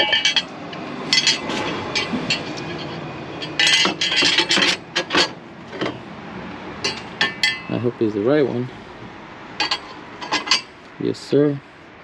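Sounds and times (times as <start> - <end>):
metal parts clinking and scraping: 0.0 - 6.1, 6.8 - 7.8, 9.6 - 10.7.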